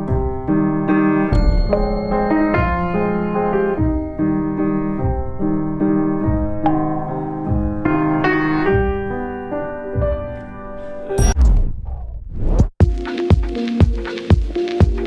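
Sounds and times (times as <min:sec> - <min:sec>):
electric piano chords: 0:00.0 - 0:11.2
soft low beat: 0:01.3 - 0:04.2.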